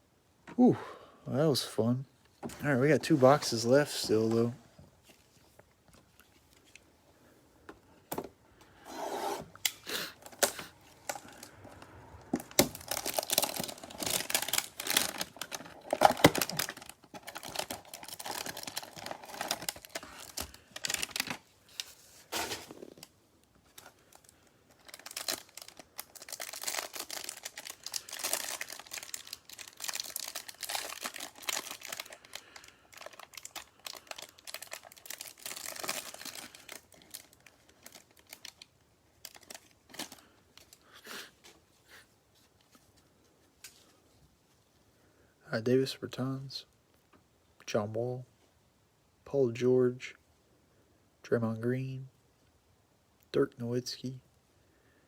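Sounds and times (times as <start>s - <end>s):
wrapper crinkling: 12.4s - 40.9s.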